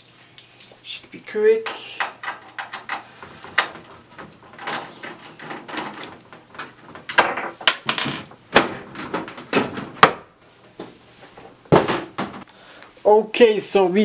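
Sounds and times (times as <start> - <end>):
computer case panel clicks and scrapes: 1.7 - 10.2.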